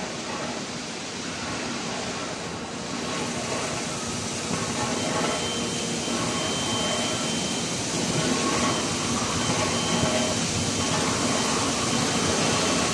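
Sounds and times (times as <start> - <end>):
furnace equipment rushing hiss: 0.0 - 12.9
faint high whistle: 5.0 - 7.8, 8.5 - 10.5.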